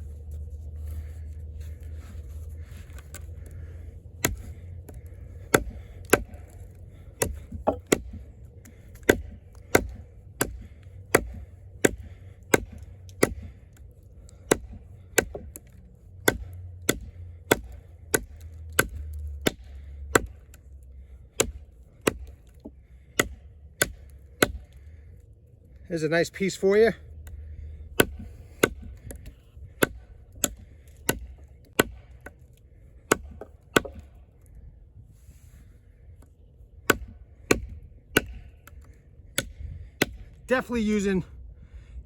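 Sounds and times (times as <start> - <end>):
low rumble: 0.0 - 20.6
knife chopping into wood: 4.2 - 6.6, 7.2 - 13.6, 14.5 - 20.6, 21.3 - 24.7, 28.0 - 32.3, 33.1 - 34.2, 36.9 - 38.5, 39.4 - 40.3.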